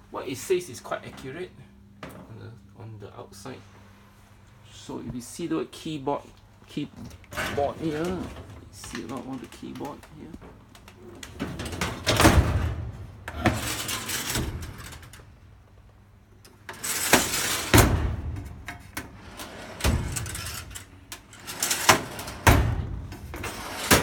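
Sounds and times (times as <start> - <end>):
objects clattering and sliding: 7.0 - 15.9, 16.5 - 24.0.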